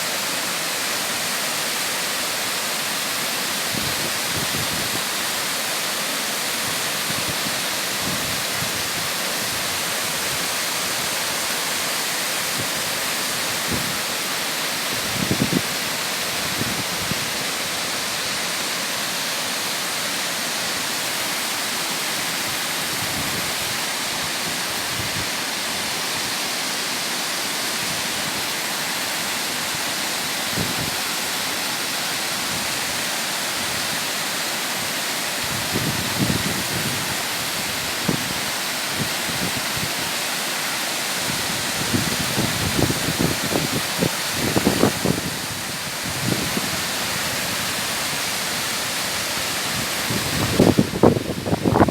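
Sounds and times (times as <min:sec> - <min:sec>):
stream rushing over rocks: 0:00.0 - 0:51.9.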